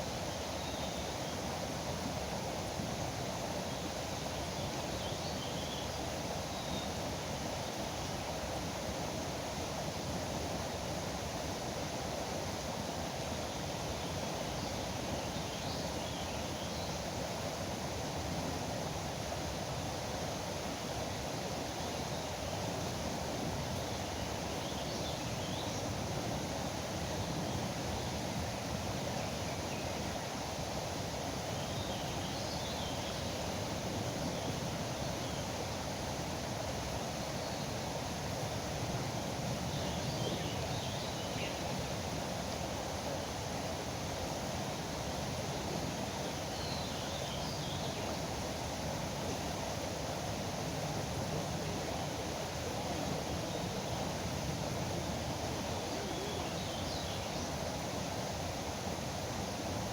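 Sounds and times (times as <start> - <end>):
river water rushing: 40.6 - 59.9
faint bird chirps: 55.8 - 57.6.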